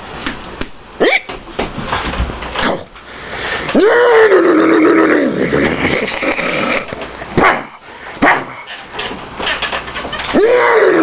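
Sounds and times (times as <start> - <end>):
dog barking and growling: 3.8 - 8.7.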